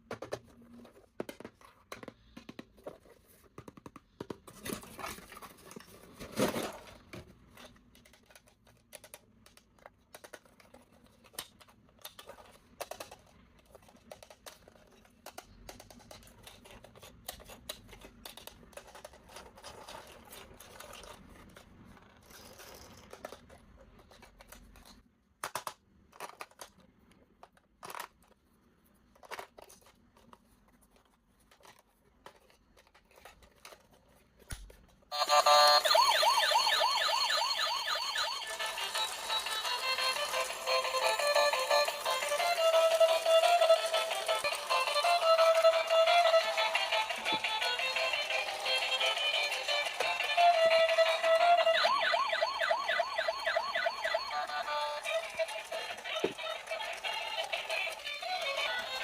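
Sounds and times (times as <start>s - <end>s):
plastic toy parts clicking: 6.6s - 28.4s, 29.0s - 35.0s, 53.4s - 59.0s.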